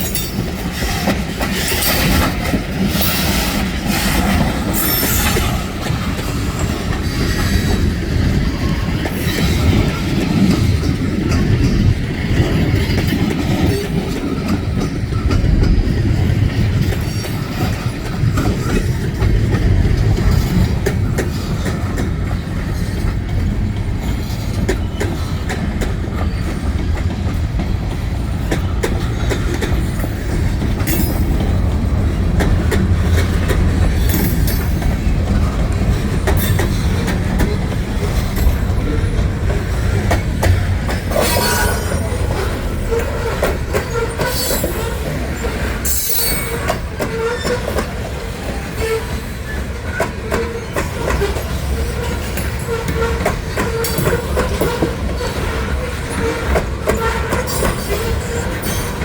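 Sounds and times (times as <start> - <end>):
railroad cars rumbling: 0.0 - 59.0
wheels clicking over rail joints: 0.0 - 59.0
high-pitched squeaks: 41.1 - 43.1.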